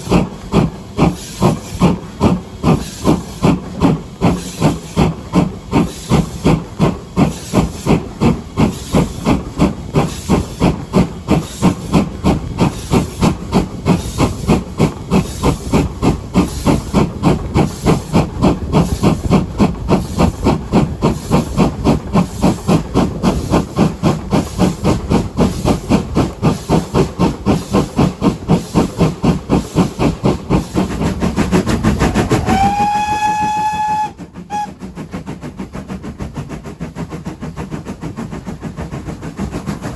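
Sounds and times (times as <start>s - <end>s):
steam locomotive exhaust chuffing: 0.0s - 39.9s
steam whistle blast: 32.1s - 34.8s.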